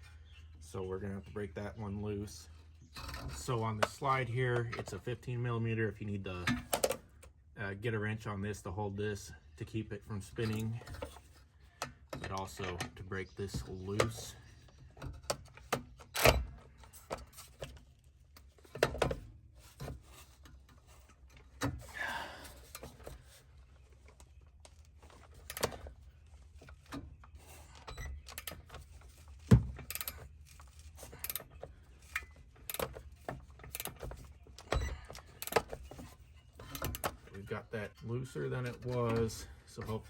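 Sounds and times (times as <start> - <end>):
wrench clanking on metal: 29.8 - 30.3, 31.0 - 33.1.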